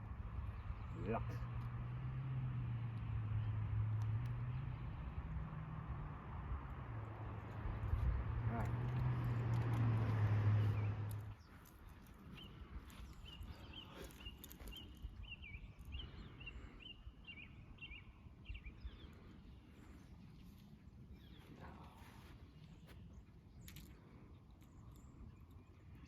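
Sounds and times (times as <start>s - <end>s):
bird chirping: 7.1s - 26.0s.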